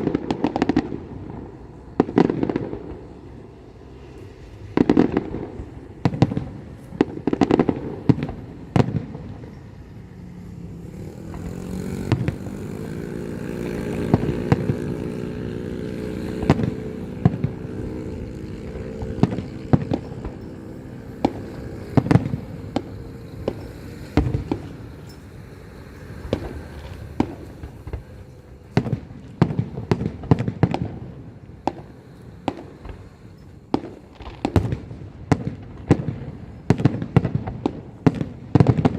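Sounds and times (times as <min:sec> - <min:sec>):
low drone: 0:00.0 - 0:35.3
fireworks and firecrackers banging: 0:00.0 - 0:38.9.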